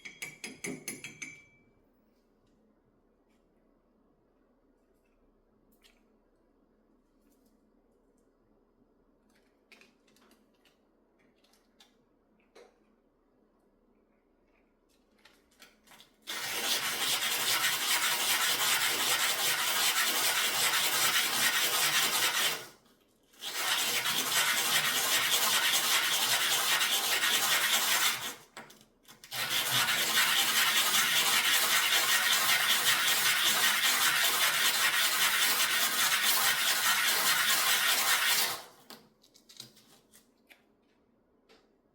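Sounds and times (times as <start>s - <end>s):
sanding jewelry: 16.4s - 22.6s, 23.4s - 28.3s, 29.4s - 38.6s.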